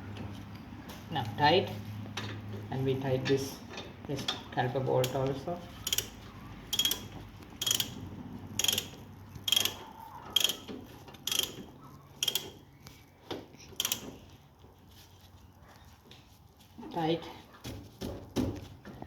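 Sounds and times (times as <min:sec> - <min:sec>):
ratchet wrench clicking: 0:05.0 - 0:12.6, 0:13.8 - 0:14.2.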